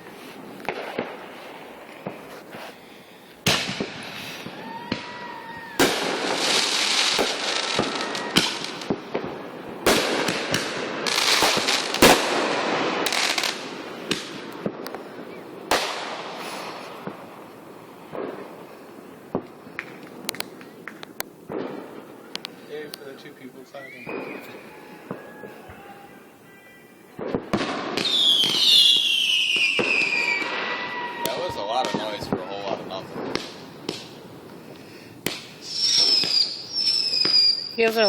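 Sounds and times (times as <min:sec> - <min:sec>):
fireworks bangs and crackling: 0:00.0 - 0:38.0
firework whistling: 0:03.4 - 0:14.2, 0:23.6 - 0:38.0.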